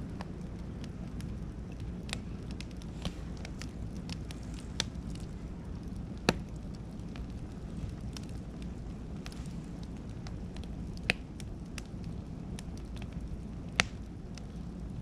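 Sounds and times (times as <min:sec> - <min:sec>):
bonfire crackling and popping: 0:00.0 - 0:15.0
low steady rumble: 0:00.0 - 0:15.0.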